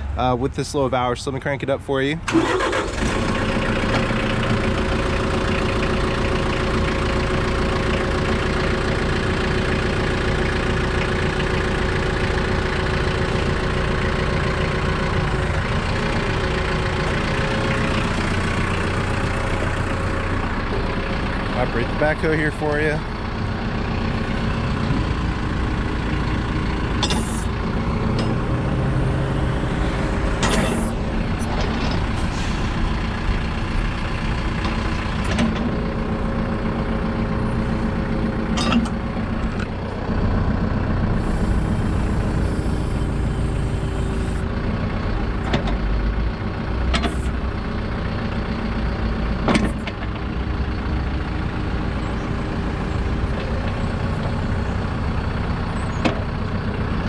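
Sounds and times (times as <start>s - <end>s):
tractor diesel engine running: 0.0s - 57.0s
backhoe clanks and hisses: 27.0s - 28.6s, 29.9s - 33.5s, 34.5s - 35.9s, 38.5s - 39.7s, 41.2s - 44.6s, 46.8s - 48.6s, 49.4s - 50.9s.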